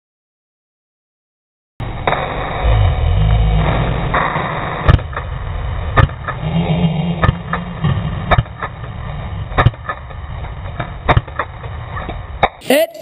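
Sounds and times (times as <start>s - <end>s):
low rumble: 1.8s - 6.5s.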